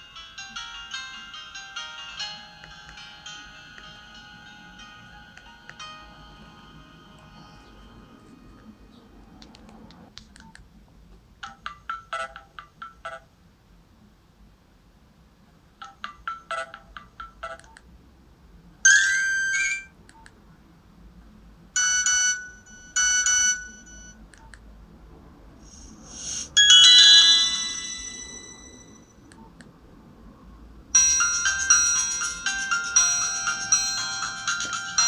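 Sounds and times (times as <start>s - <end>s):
many-note ringtone: 0.0s - 8.8s, 18.9s - 19.9s, 21.8s - 24.2s, 26.1s - 29.1s, 31.0s - 35.0s
phone chiming tone: 0.5s - 8.7s, 18.9s - 19.9s, 26.2s - 29.0s, 31.0s - 35.0s
mobile phone short beeps: 18.9s - 19.9s, 26.2s - 28.6s
whoosh into ringing chime: 26.2s - 29.0s.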